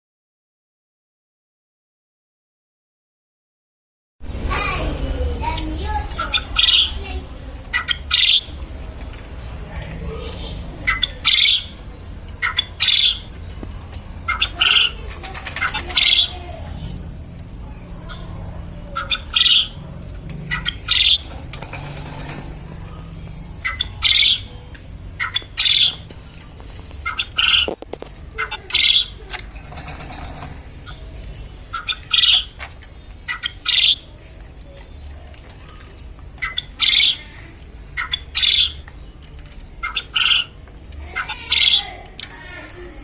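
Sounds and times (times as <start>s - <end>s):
quail calling: 7.7s - 8.6s, 10.8s - 11.8s, 12.4s - 13.4s, 14.2s - 16.4s, 18.0s - 21.4s, 23.4s - 26.1s, 26.9s - 29.3s, 30.2s - 34.2s, 36.4s - 38.9s, 39.8s - 42.0s.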